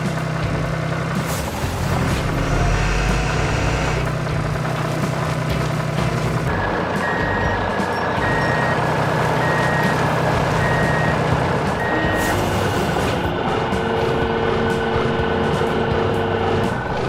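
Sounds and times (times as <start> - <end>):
vehicle engine running: 0.0 - 17.0
reversing alarm beeping: 2.2 - 4.3, 6.5 - 17.0.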